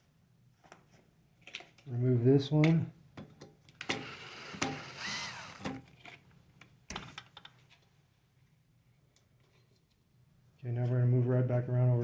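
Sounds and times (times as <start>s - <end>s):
cordless screw gun whirring: 3.8s - 5.9s
screws and plastic parts clicking: 3.8s - 6.2s.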